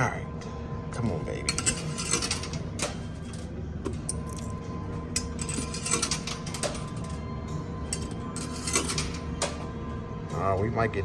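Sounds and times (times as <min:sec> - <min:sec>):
coin pusher mechanical hum: 0:00.0 - 0:11.0
coins clinking: 0:00.9 - 0:07.2, 0:07.8 - 0:09.7.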